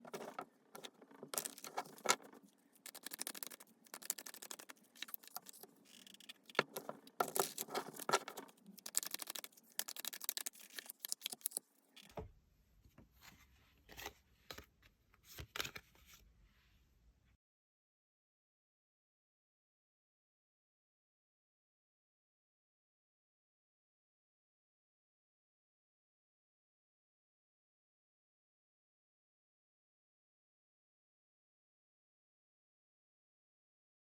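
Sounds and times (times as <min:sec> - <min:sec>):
cards being shuffled: 0:00.1 - 0:11.6.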